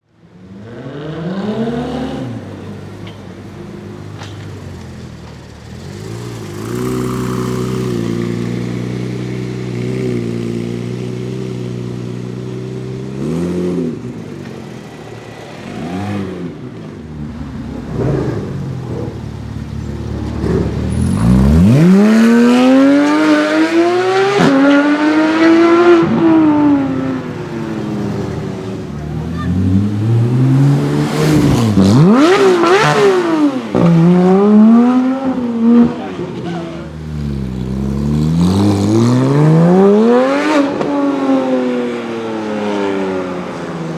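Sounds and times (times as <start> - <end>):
car accelerating loudly: 0.4 - 2.9, 15.5 - 43.9
sports car engine revving: 0.4 - 43.9.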